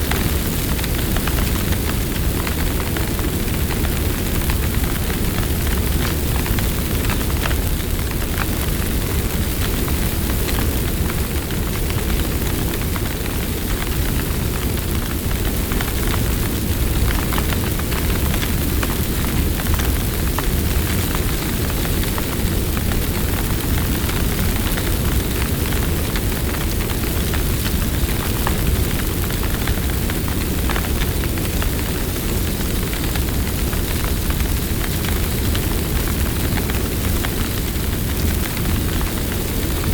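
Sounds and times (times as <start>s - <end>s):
fire crackling and popping: 0.0s - 39.9s
low rumble of flames: 0.0s - 39.9s.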